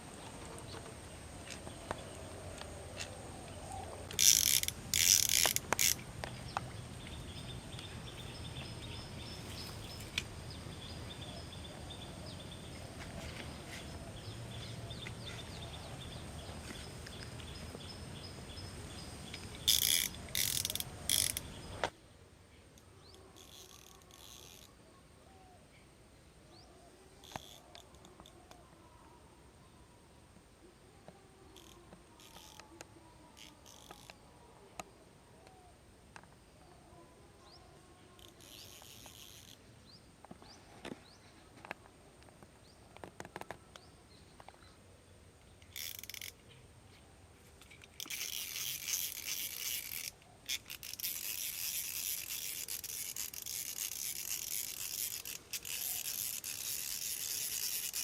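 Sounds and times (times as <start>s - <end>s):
outdoor background noise: 0.0s - 58.0s
fishing reel clicking and ratcheting: 4.0s - 7.8s, 19.3s - 21.8s, 22.8s - 24.8s, 27.2s - 28.4s, 31.6s - 32.7s, 33.4s - 34.2s, 38.2s - 39.6s, 45.6s - 46.4s, 47.6s - 58.0s.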